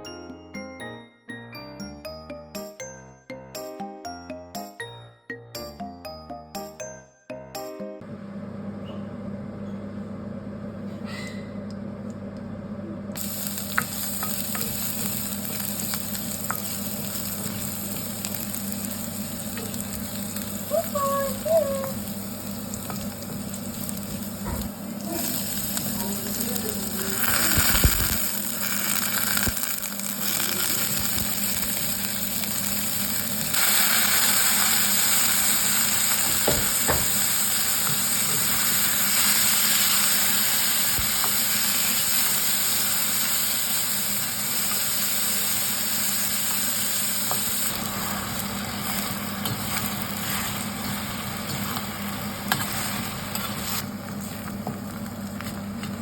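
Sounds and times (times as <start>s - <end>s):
food sizzling in a hot pan: 13.2s - 55.8s.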